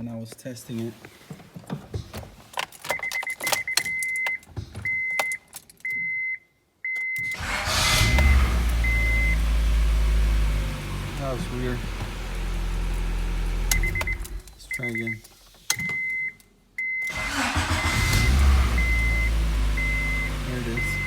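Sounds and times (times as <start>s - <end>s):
keys jangling in ignition: 2.4s - 6.0s
dashboard warning chime beeping: 2.9s - 9.6s, 13.7s - 21.0s
car engine turning over: 7.3s - 14.6s, 17.1s - 21.0s
person talking: 11.1s - 12.0s, 14.5s - 15.2s, 20.4s - 21.0s.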